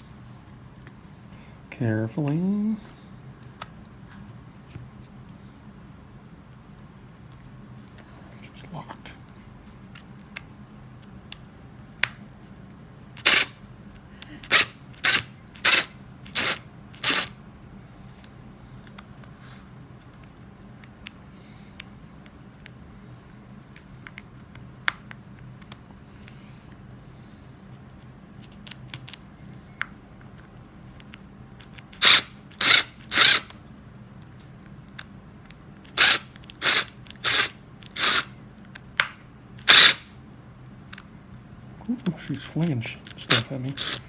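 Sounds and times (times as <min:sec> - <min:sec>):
tool handling clicks: 0:13.2 - 0:13.6, 0:14.4 - 0:17.4, 0:31.0 - 0:33.6, 0:35.8 - 0:40.0, 0:42.0 - 0:44.0
impact driver whirring: 0:13.2 - 0:13.7, 0:14.4 - 0:17.4, 0:31.8 - 0:33.6, 0:35.9 - 0:38.3, 0:39.6 - 0:40.1, 0:42.6 - 0:44.0.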